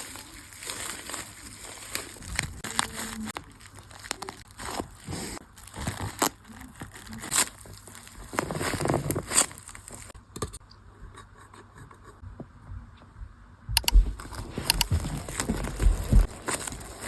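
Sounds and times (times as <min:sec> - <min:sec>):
soft thumps: 0:13.7 - 0:16.4
clicks of handling materials: 0:13.8 - 0:17.0.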